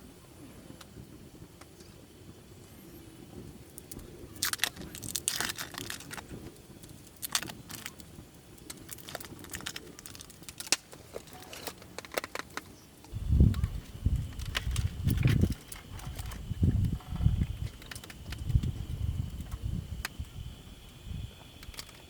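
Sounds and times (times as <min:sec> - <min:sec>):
crinkly packaging rustling: 0:04.4 - 0:12.8, 0:13.6 - 0:18.8.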